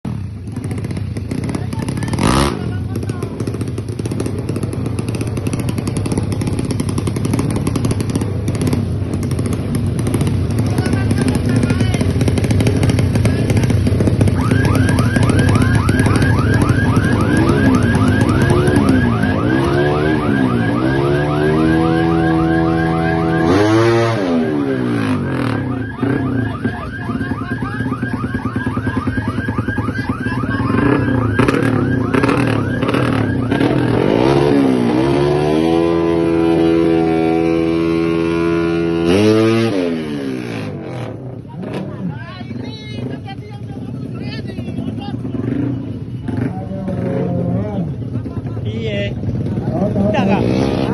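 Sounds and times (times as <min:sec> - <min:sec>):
motorcycle engine running: 0:00.0 - 0:50.9
warbling alarm-like tone: 0:14.3 - 0:37.8.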